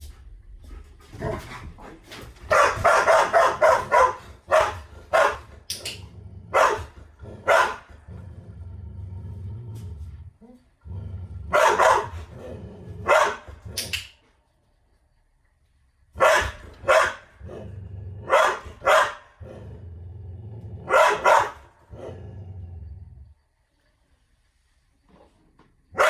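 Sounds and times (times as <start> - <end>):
animal barking: 2.4 - 8.3, 11.4 - 14.0, 16.2 - 19.8, 20.8 - 22.4.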